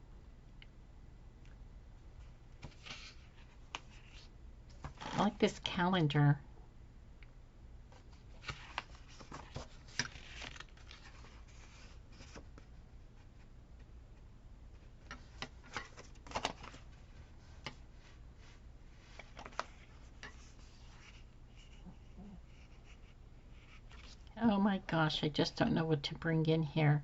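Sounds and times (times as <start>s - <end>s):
paper rustling: 8.0s - 12.7s, 15.0s - 18.2s, 19.0s - 23.0s.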